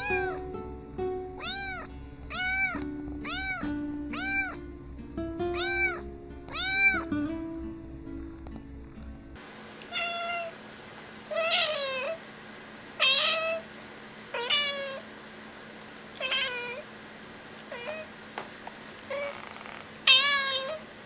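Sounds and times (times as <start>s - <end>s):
cat meowing: 0.0s - 0.5s, 1.4s - 4.6s, 5.5s - 7.1s, 9.9s - 10.6s, 11.3s - 12.2s, 13.0s - 13.6s, 14.3s - 15.0s, 16.2s - 16.8s, 17.7s - 18.1s, 19.1s - 20.9s.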